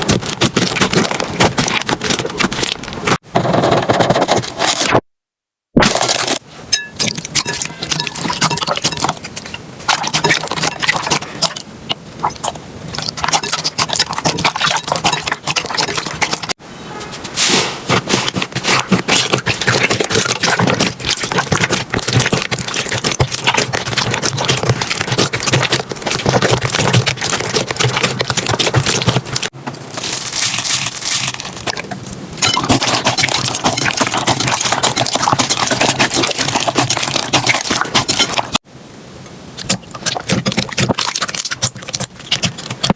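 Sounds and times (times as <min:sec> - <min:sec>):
slime crackling and popping: 0:00.0 - 0:03.2, 0:18.1 - 0:38.6.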